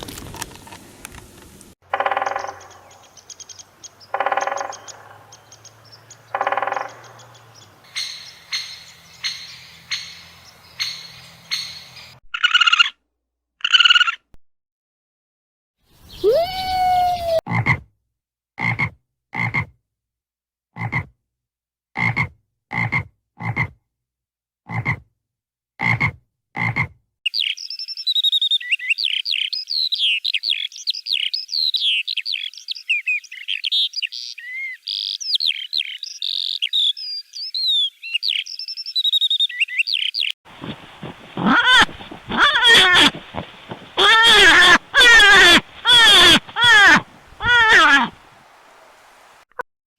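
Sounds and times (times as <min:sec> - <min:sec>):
chorus of high chirps: 0:01.9 - 0:12.2
rising animal call: 0:16.1 - 0:17.4, 0:40.5 - 0:49.0
short croaks: 0:40.5 - 0:48.4.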